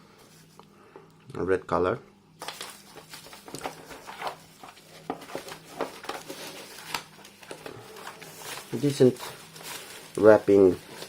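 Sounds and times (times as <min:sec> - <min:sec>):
packaging rustling: 0:02.4 - 0:11.0.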